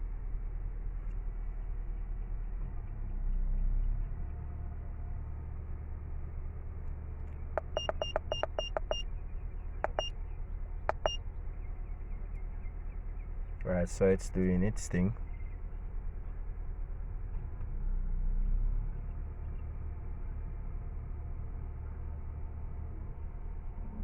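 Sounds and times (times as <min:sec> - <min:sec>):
low steady hum: 0:07.6 - 0:09.0, 0:09.8 - 0:10.1, 0:10.9 - 0:12.3
short high beeps from keypresses: 0:07.6 - 0:09.0, 0:09.8 - 0:10.1, 0:10.9 - 0:11.2.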